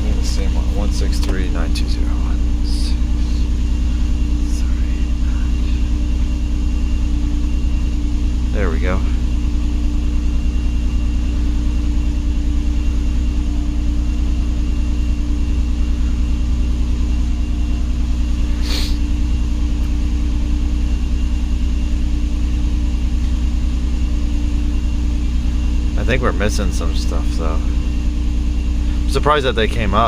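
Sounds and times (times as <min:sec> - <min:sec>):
car engine idling: 0:00.0 - 0:30.0
short hiss: 0:18.5 - 0:19.0.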